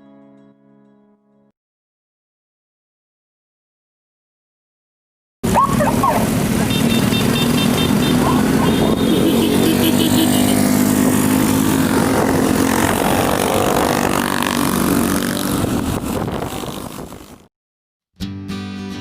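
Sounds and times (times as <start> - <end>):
motor vehicle engine running: 5.4 - 13.4.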